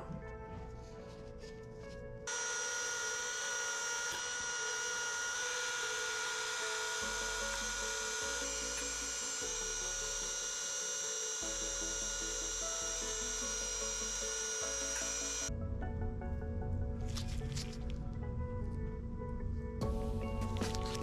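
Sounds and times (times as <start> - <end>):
rotary tool whining: 2.3 - 15.5.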